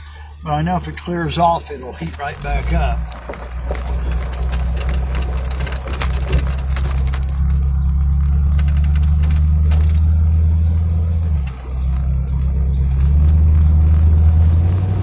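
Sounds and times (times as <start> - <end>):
vehicle engine and road drone: 0.0 - 15.0
clicks: 1.6 - 15.0.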